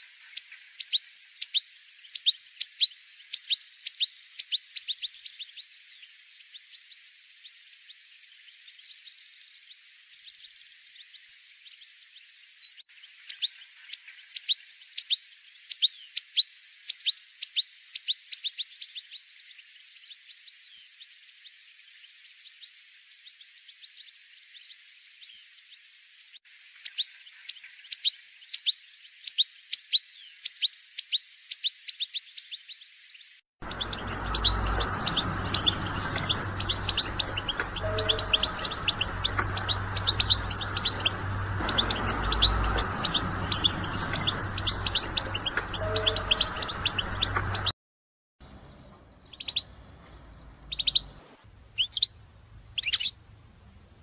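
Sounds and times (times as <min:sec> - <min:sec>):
goldfinch chirps and twitters: 0:00.0 - 0:47.7, 0:48.5 - 0:53.2
low hum: 0:33.6 - 0:47.7.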